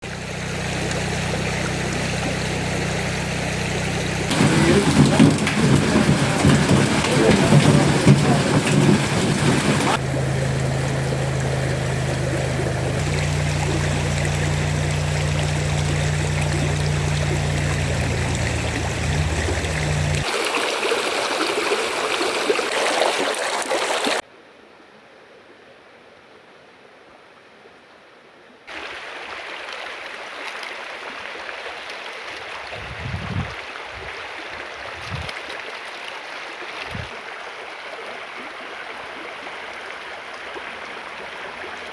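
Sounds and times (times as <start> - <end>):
rushing water: 0.0 - 24.2, 28.7 - 41.9
low steady hum: 0.6 - 20.2
low thumps: 4.3 - 20.3.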